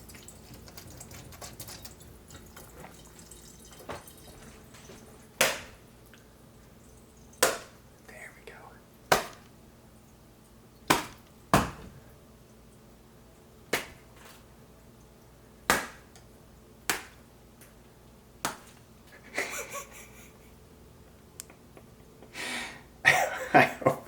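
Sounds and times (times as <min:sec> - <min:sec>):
crackly rustle: 0:00.0 - 0:05.3
sharp smacks and snaps: 0:05.4 - 0:05.8, 0:09.1 - 0:09.5, 0:10.9 - 0:11.8, 0:13.7 - 0:14.4, 0:15.7 - 0:16.3, 0:16.9 - 0:17.8, 0:18.4 - 0:18.8.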